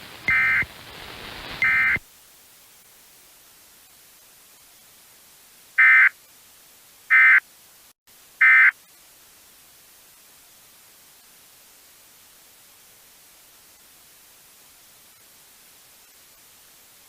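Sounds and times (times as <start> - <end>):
faint steady hiss: 0.0 - 17.0
screeching digital data bursts: 1.6 - 2.0, 8.4 - 8.7.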